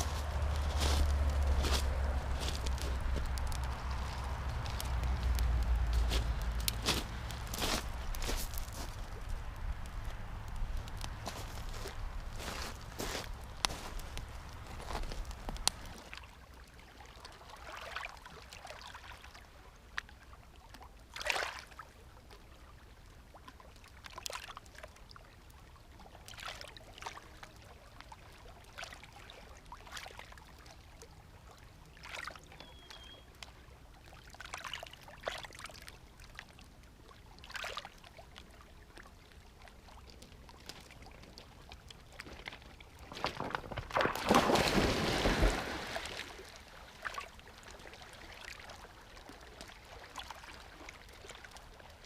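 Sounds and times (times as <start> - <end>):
small waves lapping: 0.0 - 52.0.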